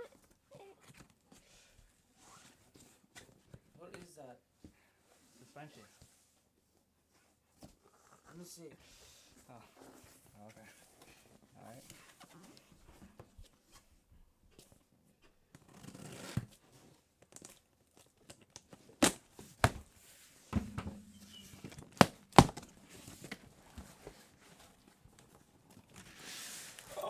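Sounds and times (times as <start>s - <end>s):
sharp knocks: 20.6s - 22.7s.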